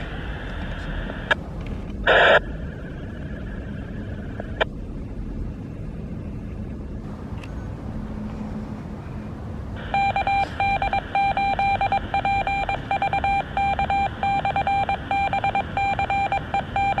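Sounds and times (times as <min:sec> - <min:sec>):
two-way radio hiss: 0:00.0 - 0:01.4, 0:02.1 - 0:02.5
morse code beeps: 0:09.8 - 0:17.0.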